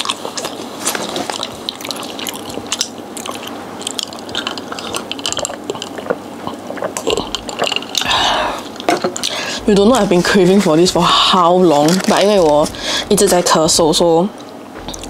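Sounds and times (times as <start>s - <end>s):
chewing crunchy fried food: 0.0s - 9.6s
wet mouth clicks: 1.3s - 9.4s.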